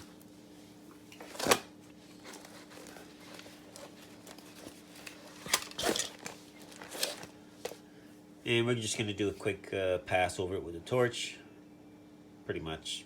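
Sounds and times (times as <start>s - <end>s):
faint steady hum: 0.0s - 13.0s
fabric blanket rustling on plastic: 2.1s - 7.4s.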